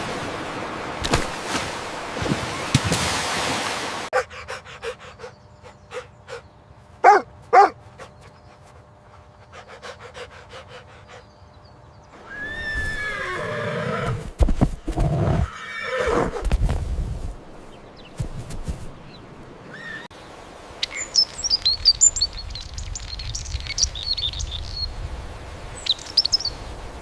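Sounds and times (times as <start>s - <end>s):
animal calling: 4.1s - 14.2s.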